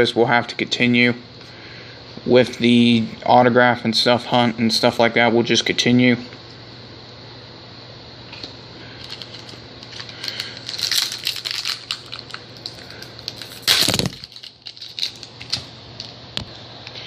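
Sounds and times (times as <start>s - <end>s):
foil wrapper crinkling: 8.4s - 16.2s
pack bumping in hands: 8.4s - 16.2s.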